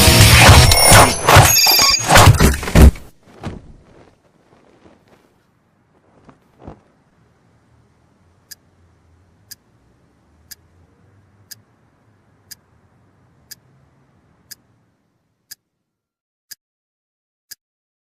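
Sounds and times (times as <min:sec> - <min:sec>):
faint low hum: 0:03.6 - 0:16.0
clock ticking: 0:08.4 - 0:08.7, 0:09.4 - 0:10.7, 0:11.4 - 0:11.8, 0:12.4 - 0:12.7, 0:14.3 - 0:14.8.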